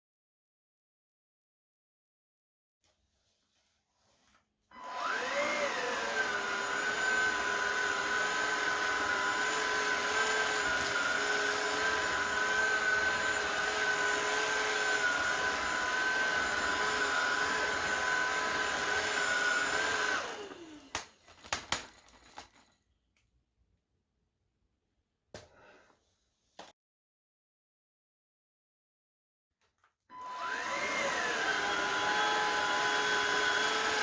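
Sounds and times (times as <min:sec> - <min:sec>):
vacuum cleaner motor whine: 0:04.7 - 0:22.4, 0:30.1 - 0:34.0.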